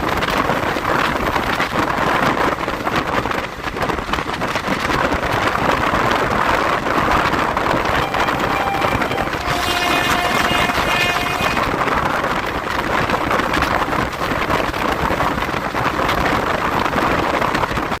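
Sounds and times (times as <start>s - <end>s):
fast-moving train rushing: 0.0s - 17.9s
locomotive horn: 7.8s - 12.2s.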